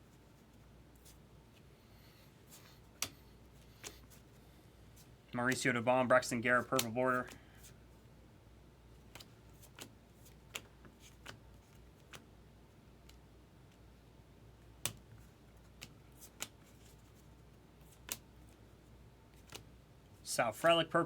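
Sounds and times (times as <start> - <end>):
trading cards clicking and snapping: 2.9 - 3.2, 6.7 - 7.4, 9.0 - 12.3, 14.8 - 16.7, 17.9 - 18.2, 19.3 - 19.7.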